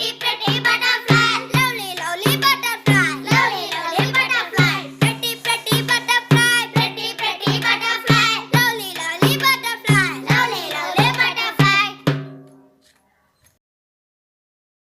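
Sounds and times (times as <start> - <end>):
song with singing over a beat: 0.0 - 12.2.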